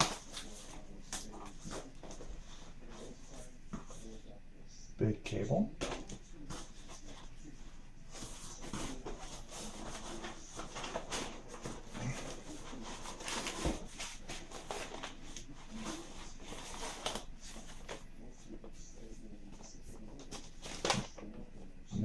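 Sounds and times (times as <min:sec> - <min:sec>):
packaging rustling and crinkling: 0:08.1 - 0:18.0.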